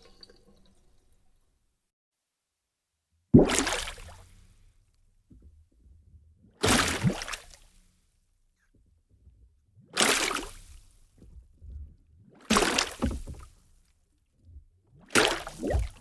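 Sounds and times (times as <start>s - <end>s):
bubbles gurgling in water: 15.2s - 16.0s.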